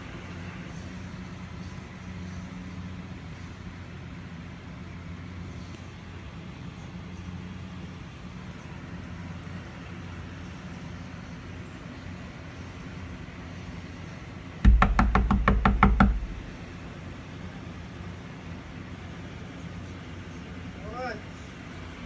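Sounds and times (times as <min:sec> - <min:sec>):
loud knocks: 0:14.7 - 0:16.6.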